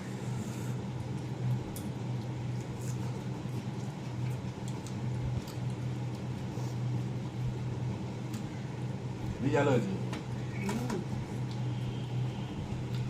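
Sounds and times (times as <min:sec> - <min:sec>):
low machine hum: 0:00.0 - 0:13.0
small clicks and taps of eating: 0:01.0 - 0:06.5.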